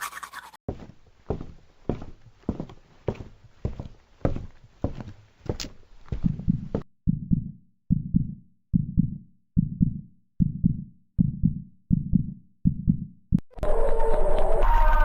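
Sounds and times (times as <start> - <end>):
heartbeat double beats: 6.2 - 13.4.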